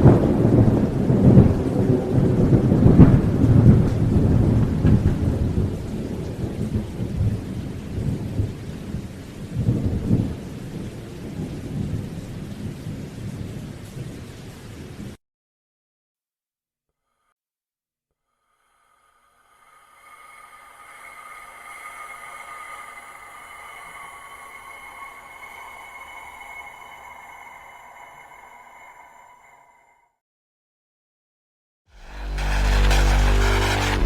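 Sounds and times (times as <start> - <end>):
thunder rumbling: 0.0 - 12.6
rain hiss: 19.6 - 28.9.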